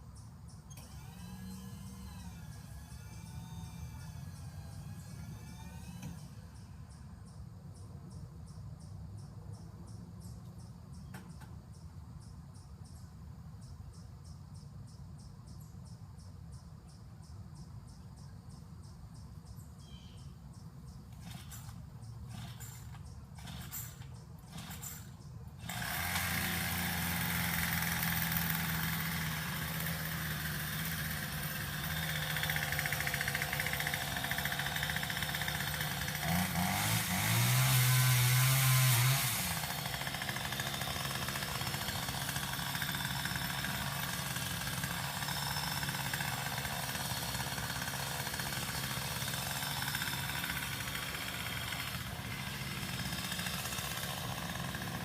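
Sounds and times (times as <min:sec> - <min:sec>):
small engine running: 0:00.6 - 0:07.1, 0:21.1 - 0:55.0.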